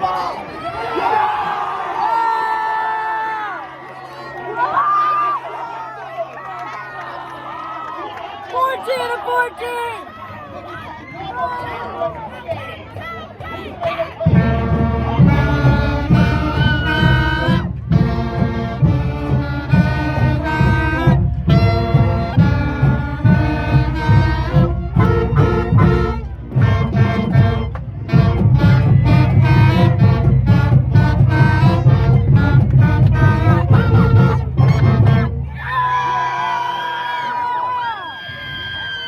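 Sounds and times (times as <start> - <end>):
marching band brass tune: 12.3 - 36.2
steady drum beat: 14.3 - 35.3.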